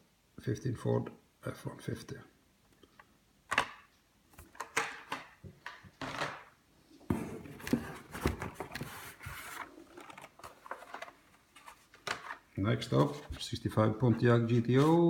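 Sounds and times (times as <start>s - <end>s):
cardboard and plastic clacking: 7.1s - 13.4s
packaging rubbing rustle: 7.8s - 13.5s.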